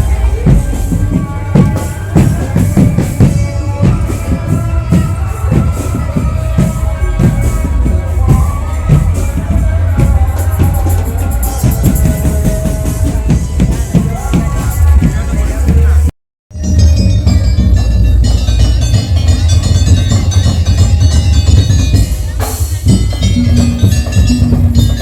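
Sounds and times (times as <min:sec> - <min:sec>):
steady drum beat: 0:00.0 - 0:25.0.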